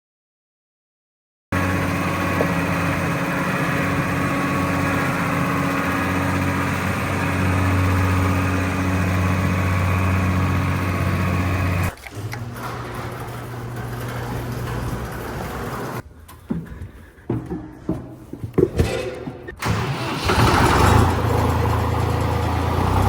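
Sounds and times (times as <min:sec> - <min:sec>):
engine running steadily: 0:01.6 - 0:16.0, 0:19.6 - 0:23.0.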